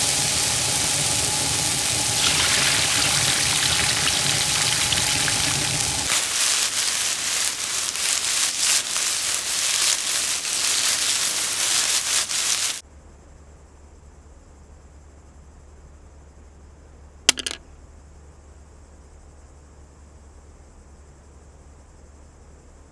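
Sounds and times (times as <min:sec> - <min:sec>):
crackly patter of clicks: 0:00.0 - 0:12.8
dense hissing noise: 0:00.0 - 0:12.8.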